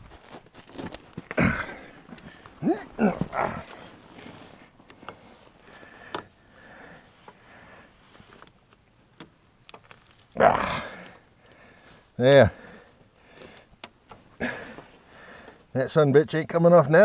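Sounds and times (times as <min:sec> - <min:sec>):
man grunting with effort: 0:01.3 - 0:01.9, 0:02.6 - 0:03.8, 0:10.4 - 0:11.1.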